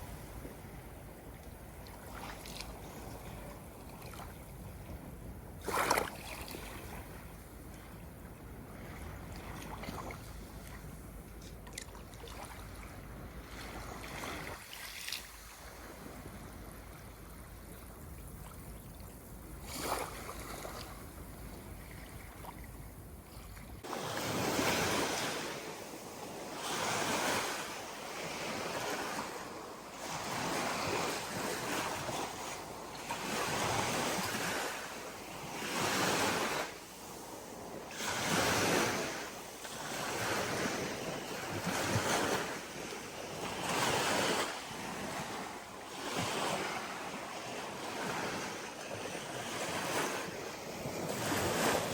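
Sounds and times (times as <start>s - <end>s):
wind rumble on microphone: 0.0s - 51.9s
ocean waves washing in: 23.8s - 51.9s.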